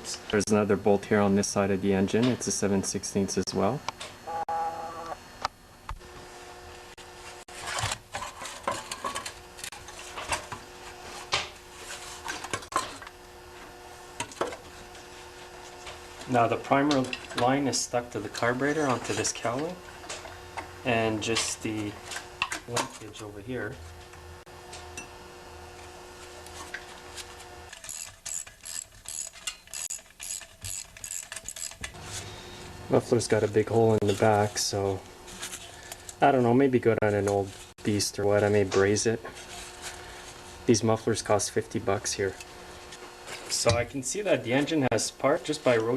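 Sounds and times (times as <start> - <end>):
steady low hum: 0.0 - 45.9
socket ratchet wrench clicking: 27.8 - 32.0.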